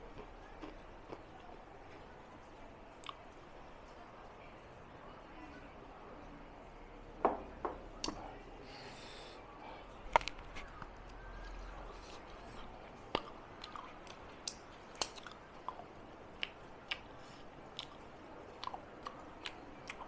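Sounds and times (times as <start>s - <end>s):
chewing food: 0.0s - 2.1s, 3.0s - 3.3s, 10.1s - 20.0s.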